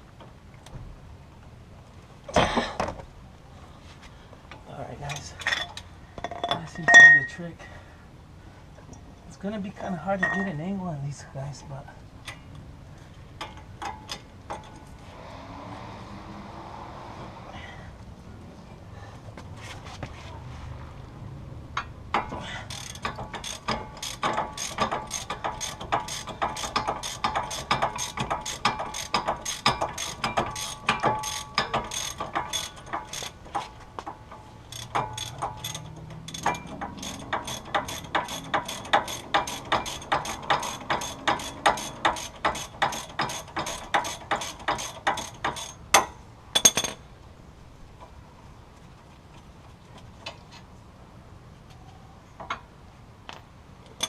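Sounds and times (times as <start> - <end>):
ratchet wrench clicking: 22.2 - 33.7, 34.6 - 46.7.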